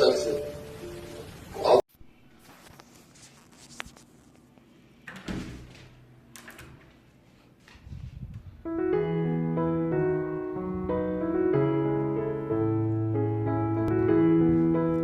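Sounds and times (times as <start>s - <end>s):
solo piano music: 8.6s - 15.0s.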